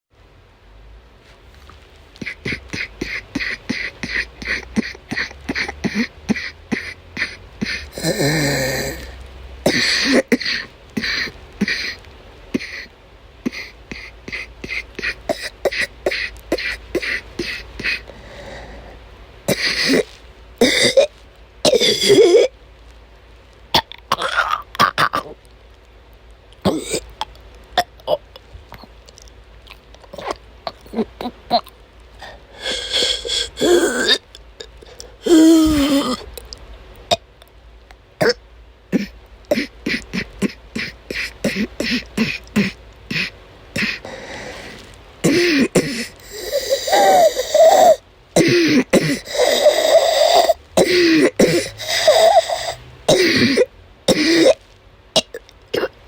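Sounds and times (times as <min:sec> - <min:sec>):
woman hacking coughs: 0:02.2 - 0:08.9, 0:20.6 - 0:21.1, 0:26.6 - 0:27.0, 0:39.0 - 0:44.0, 0:46.9 - 0:49.3, 0:53.1 - 0:54.6
long strained vocal sound: 0:02.2 - 0:22.5, 0:29.9 - 0:37.2, 0:38.2 - 0:56.0.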